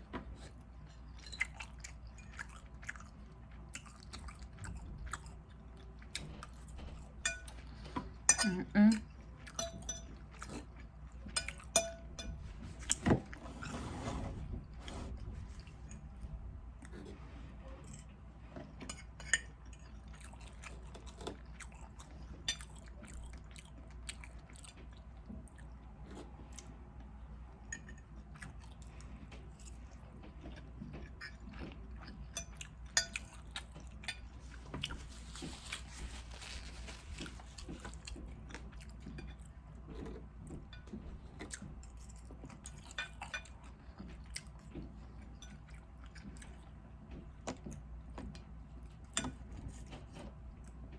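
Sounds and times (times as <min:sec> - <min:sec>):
steady low hum: 0:00.0 - 0:50.9
chewing and mouth smacking: 0:00.4 - 0:07.2, 0:19.4 - 0:26.8, 0:27.8 - 0:50.9.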